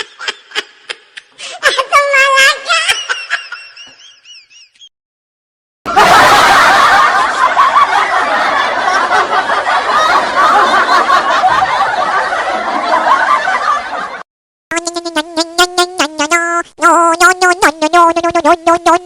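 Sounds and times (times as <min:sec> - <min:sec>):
crowd laughing: 0:02.9 - 0:04.7, 0:05.9 - 0:14.2.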